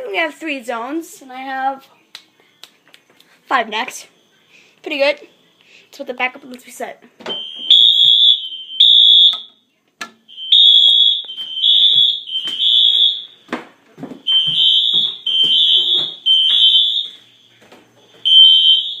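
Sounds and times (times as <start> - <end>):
fire alarm beeping: 7.2 - 13.5, 14.2 - 19.0.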